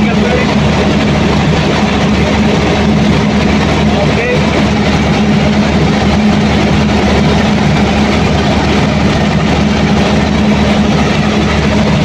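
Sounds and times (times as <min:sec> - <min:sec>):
diesel generator engine running: 0:00.0 - 0:12.0.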